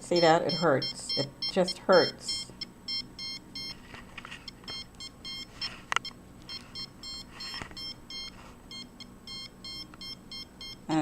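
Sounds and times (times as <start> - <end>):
rapid high electronic beeps: 0.1 - 3.8, 4.7 - 5.5.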